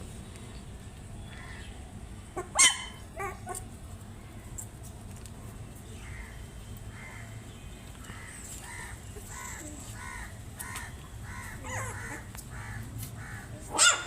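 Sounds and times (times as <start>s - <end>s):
puppies crying: 2.4s - 3.6s, 9.3s - 12.8s, 13.7s - 14.0s
puppy whining: 2.4s - 3.7s, 11.6s - 12.3s.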